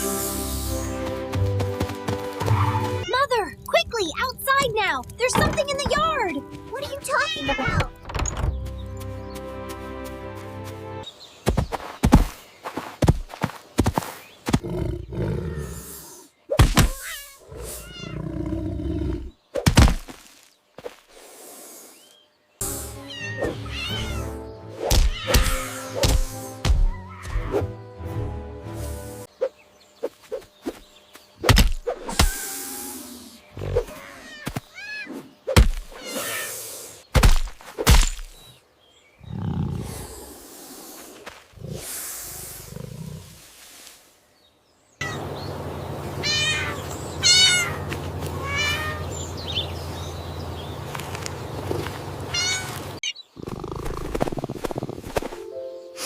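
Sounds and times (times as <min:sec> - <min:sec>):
sharp cartoon thumps: 0:35.5 - 0:36.0.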